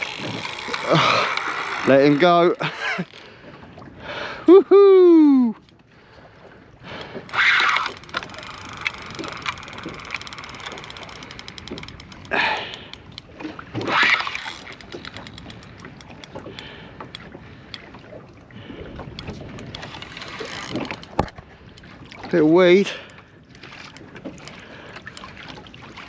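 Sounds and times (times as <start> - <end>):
water lapping around boat: 0.0 - 26.0
light ticking: 7.8 - 13.3, 14.4 - 17.8.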